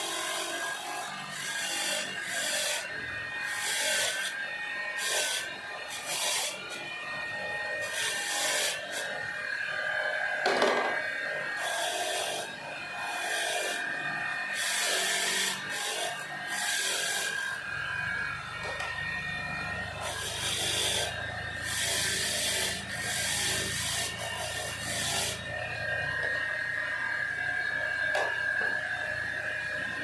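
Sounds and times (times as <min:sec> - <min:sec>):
rasping filing strokes: 0:01.3 - 0:04.4, 0:07.8 - 0:09.1, 0:14.5 - 0:17.5, 0:20.0 - 0:25.5.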